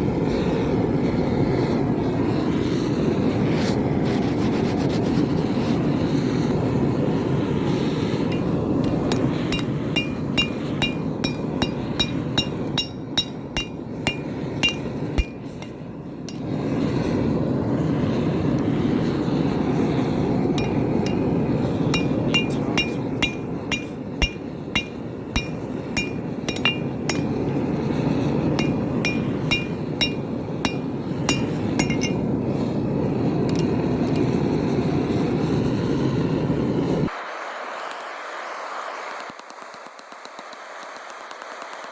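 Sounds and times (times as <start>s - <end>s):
hammer ringing on anvil: 8.3s - 16.6s, 20.6s - 32.2s.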